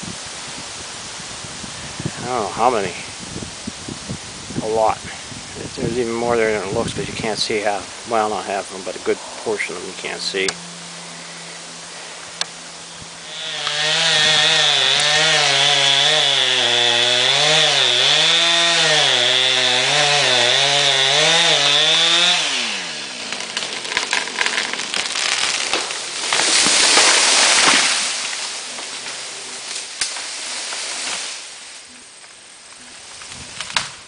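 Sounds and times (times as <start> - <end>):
chainsaw cutting into tree: 13.1 - 31.7
tree crashing through branches: 13.2 - 32.4, 33.0 - 34.0
wood cracking: 13.3 - 34.0.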